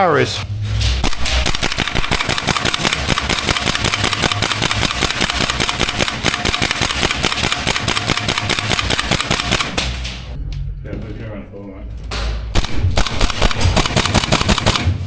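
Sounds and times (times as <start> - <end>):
airsoft gun full-auto burst: 1.3 - 10.2, 12.6 - 15.0.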